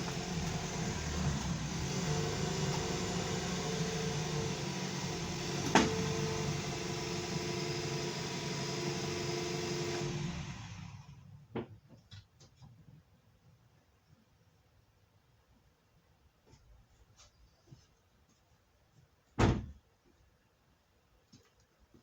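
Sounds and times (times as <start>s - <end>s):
car engine running: 0.0s - 11.1s.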